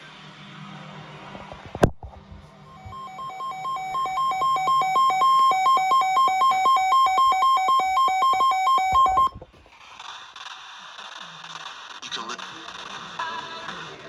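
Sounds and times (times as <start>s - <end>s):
two-tone electronic beeping: 2.7s - 9.4s.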